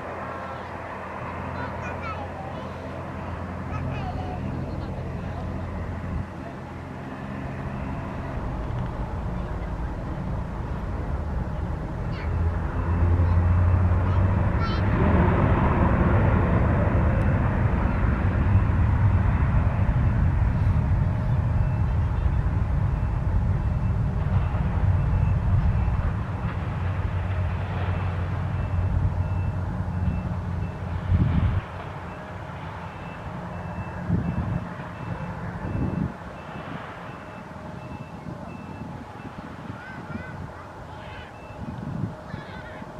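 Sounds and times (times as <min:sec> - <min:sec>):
jet engines rumbling: 0:00.0 - 0:42.9
vehicle reversing alarm beeping: 0:00.1 - 0:15.1, 0:15.8 - 0:42.9.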